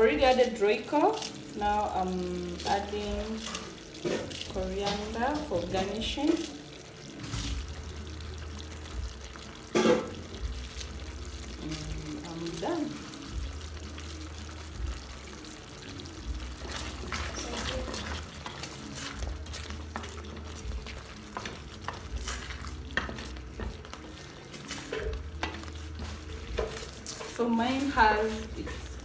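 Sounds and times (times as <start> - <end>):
faint sizzle of stew: 0.0 - 29.0
spoon clinking and scraping pot: 16.6 - 29.0.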